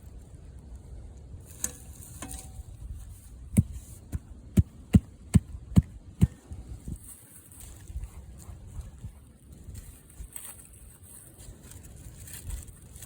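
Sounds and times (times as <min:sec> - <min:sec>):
dull thuds in dirt: 0:03.5 - 0:06.6.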